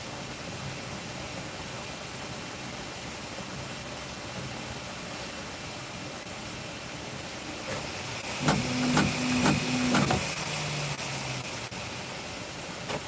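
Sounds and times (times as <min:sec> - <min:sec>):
motors humming: 0:07.4 - 0:11.7
printer fan hiss: 0:07.4 - 0:11.8.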